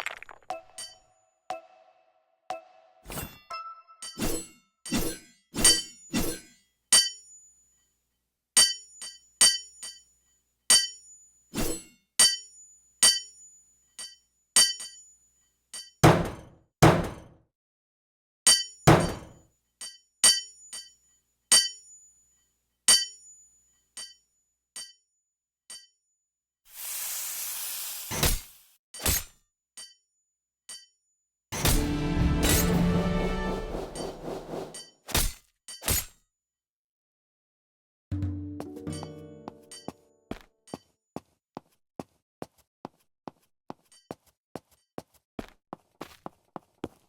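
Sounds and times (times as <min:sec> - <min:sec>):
hammer striking anvil: 0:15.8 - 0:17.3, 0:18.5 - 0:19.4, 0:31.6 - 0:36.1, 0:38.2 - 0:40.0
short hiss: 0:26.7 - 0:28.8.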